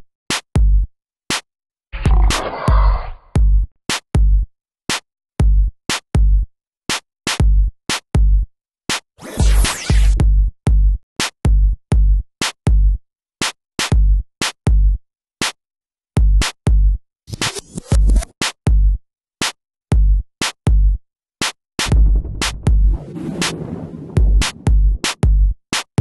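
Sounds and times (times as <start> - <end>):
electronic drum-machine beat: 9.4 - 10.5, 21.8 - 23.1, 24.2 - 25.9.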